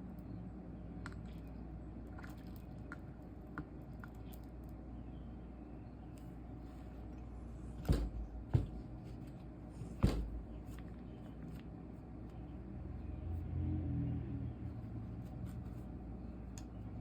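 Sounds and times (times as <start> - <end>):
low steady hum: 0.0 - 17.0
sharp knocks: 7.8 - 8.9, 10.0 - 10.5.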